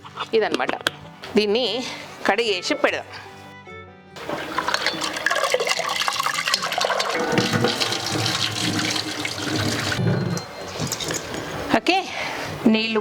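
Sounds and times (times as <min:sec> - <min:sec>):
water running and splashing: 0:04.2 - 0:11.3.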